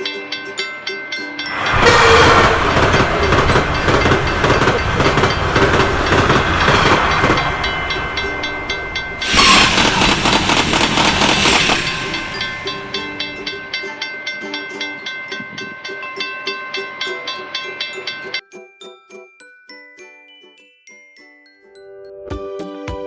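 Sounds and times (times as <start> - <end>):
crossing bell dinging: 0.0 - 18.5
train rushing rumble: 1.4 - 14.4
wheels clacking on rail joints: 1.5 - 18.4.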